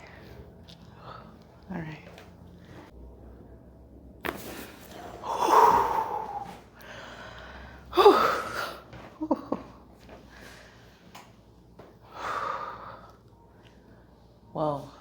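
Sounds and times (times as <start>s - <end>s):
person gasping and exhaling: 5.2s - 8.8s.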